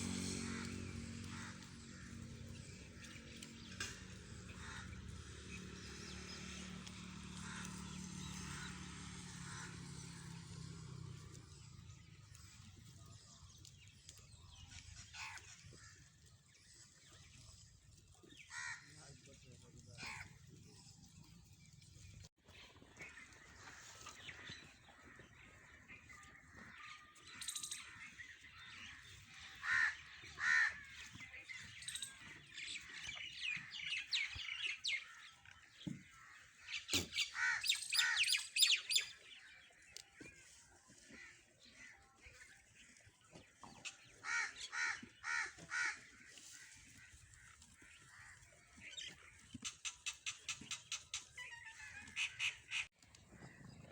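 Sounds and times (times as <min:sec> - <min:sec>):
bird calling: 0:23.0 - 0:39.5, 0:48.8 - 0:53.8.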